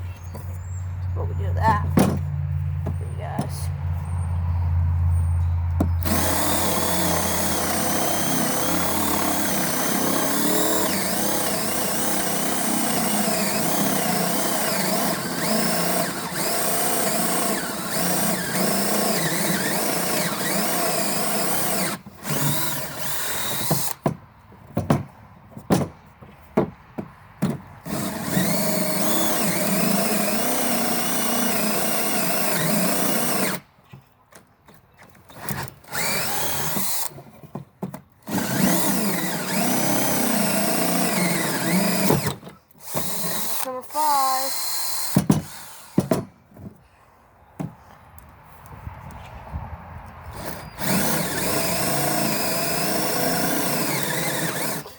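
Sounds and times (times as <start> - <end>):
cordless drill motor whine: 6.0 - 24.0, 27.9 - 33.6, 35.9 - 37.2, 38.3 - 46.0, 50.4 - 54.9.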